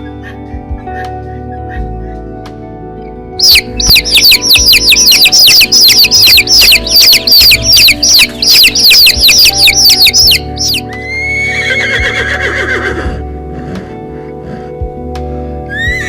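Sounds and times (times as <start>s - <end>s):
background music: 0.0s - 16.0s
bird chirping rapidly: 3.4s - 11.2s
horse whinnying: 11.0s - 13.3s, 15.7s - 16.0s.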